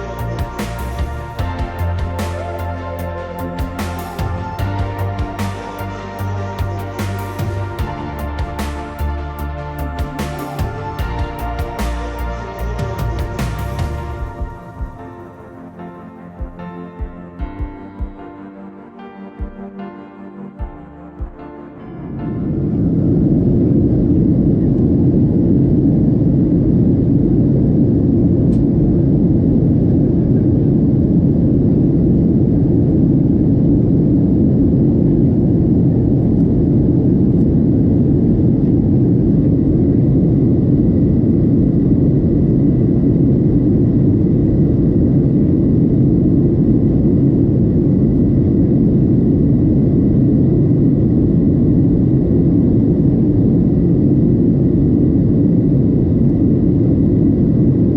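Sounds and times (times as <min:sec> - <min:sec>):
faint high whine: 0:00.0 - 0:16.5.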